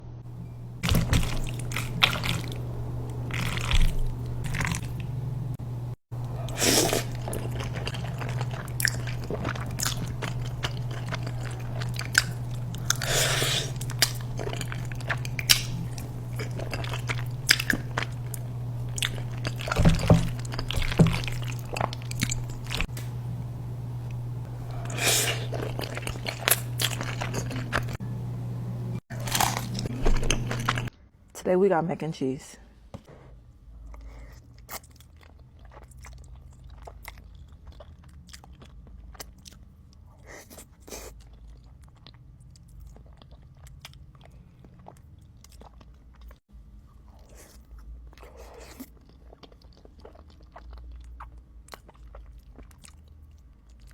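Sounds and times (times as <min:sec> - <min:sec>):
steady low hum: 0:00.0 - 0:40.2
crunching and wet chewing: 0:00.8 - 0:05.2, 0:06.2 - 0:22.9, 0:24.1 - 0:28.0, 0:29.1 - 0:30.9, 0:33.8 - 0:53.9.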